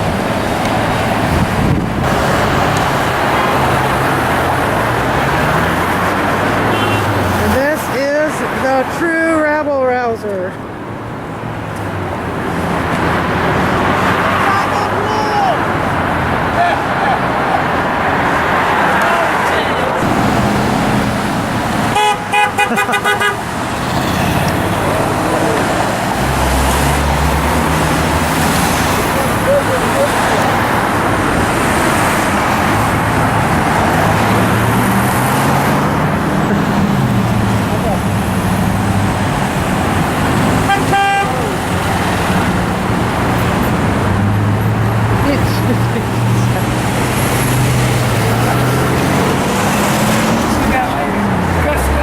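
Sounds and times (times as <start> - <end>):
heavy vehicle rumbling past: 0.0 - 8.6, 11.1 - 52.0
freeway traffic noise: 0.0 - 52.0
car horn honks: 6.7 - 7.2, 19.0 - 20.2, 21.9 - 24.8, 40.6 - 41.7.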